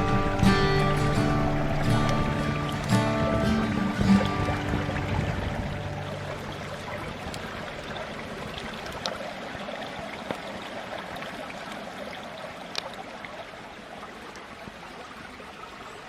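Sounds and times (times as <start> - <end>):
campfire hissing: 0.0 - 8.8
fire crackles and pops: 0.0 - 9.2.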